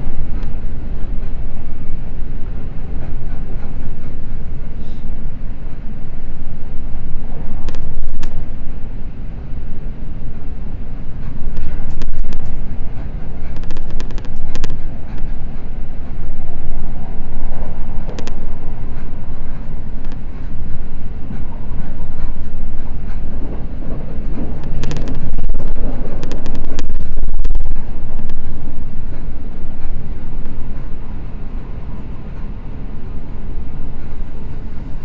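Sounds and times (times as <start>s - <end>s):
sharp clacks of rail joints: 0.0s - 5.9s, 11.0s - 32.8s
train wheels rumbling on rail: 0.0s - 35.0s.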